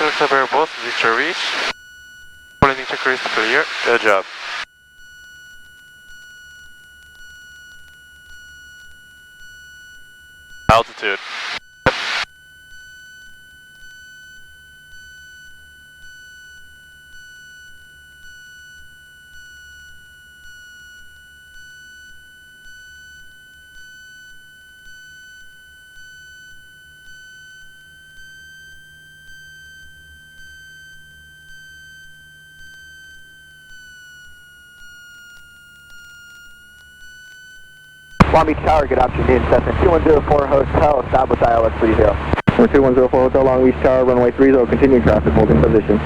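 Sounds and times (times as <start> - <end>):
high-pitched electrical whine: 0.0 - 1.7, 2.6 - 4.7, 10.7 - 13.0, 29.8 - 46.0
low hum: 0.0 - 1.7, 2.6 - 4.6, 10.7 - 12.2, 38.2 - 46.0.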